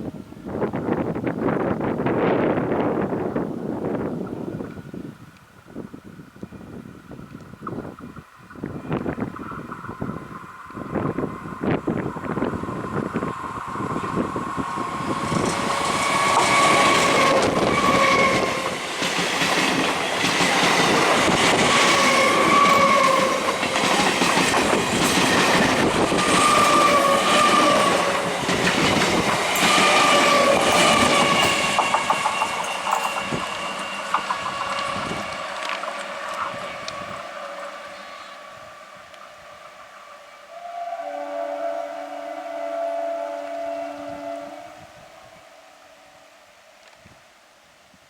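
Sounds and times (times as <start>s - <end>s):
train wheels clattering over rails: 11.8s - 37.2s
train horn blasts: 15.2s - 18.8s, 21.2s - 24.0s, 25.3s - 47.0s.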